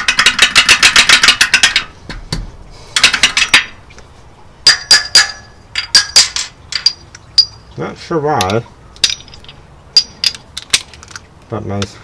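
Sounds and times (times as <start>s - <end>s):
metal clinks: 4.6s - 7.6s, 8.4s - 11.2s.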